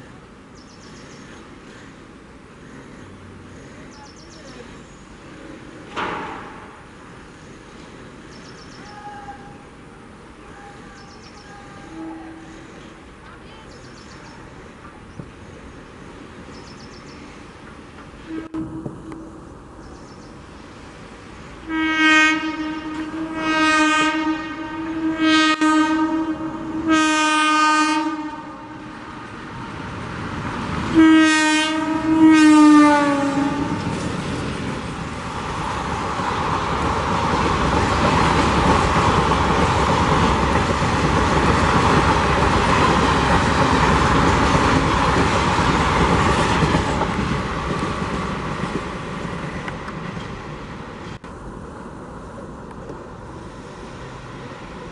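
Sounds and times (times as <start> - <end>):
passenger train rolling past: 0.0 - 54.9
locomotive horn honks: 10.4 - 12.6, 18.2 - 19.4, 21.6 - 28.9, 30.9 - 33.8.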